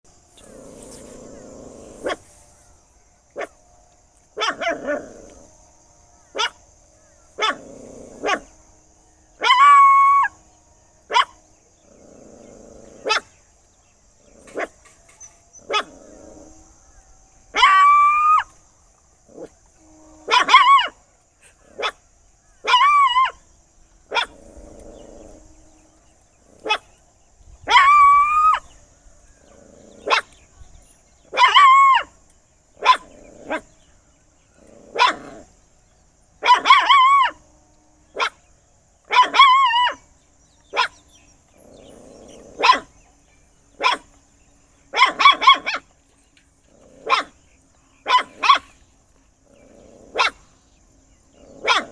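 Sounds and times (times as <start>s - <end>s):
dog barking loudly: 4.4s - 5.0s, 35.0s - 35.4s, 36.4s - 37.4s, 42.6s - 42.9s, 43.8s - 44.0s, 48.0s - 48.7s, 50.1s - 50.4s, 51.6s - 51.9s.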